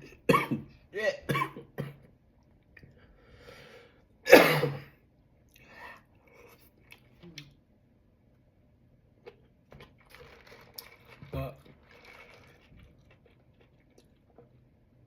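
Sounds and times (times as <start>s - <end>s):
man sneezing: 4.3s - 4.9s.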